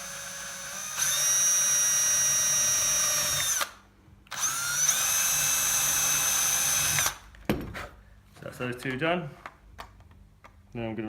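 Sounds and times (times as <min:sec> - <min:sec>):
electric drill whining: 0:00.0 - 0:07.3.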